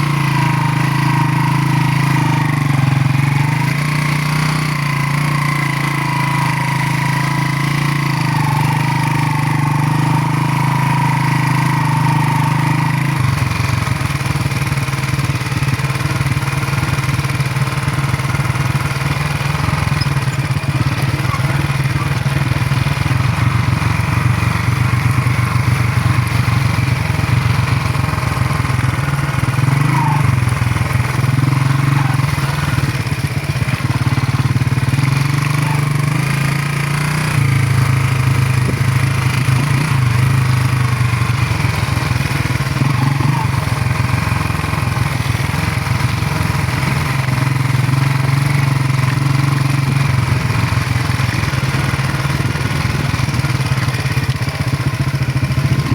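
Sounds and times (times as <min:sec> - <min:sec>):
motorcycle engine running: 0:00.0 - 0:55.9.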